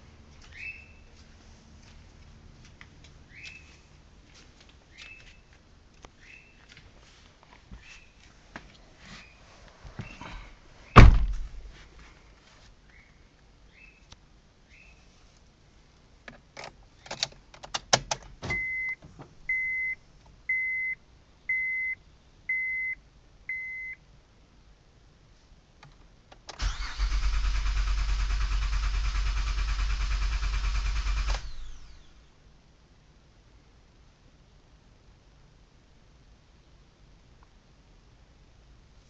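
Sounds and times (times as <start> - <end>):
engine cranking: 26.6 - 31.6.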